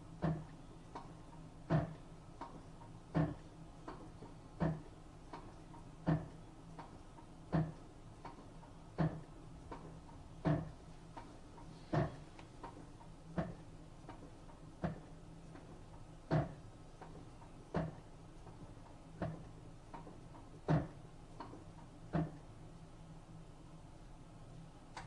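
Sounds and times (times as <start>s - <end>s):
washing machine hum: 0.0s - 25.0s
washing machine knocking: 1.7s - 2.0s, 3.1s - 3.4s, 4.6s - 4.9s, 7.5s - 7.8s, 9.0s - 9.3s, 10.4s - 10.8s, 11.9s - 12.2s, 13.4s - 13.6s, 14.8s - 15.1s, 16.3s - 16.6s, 17.7s - 18.0s, 20.6s - 21.0s.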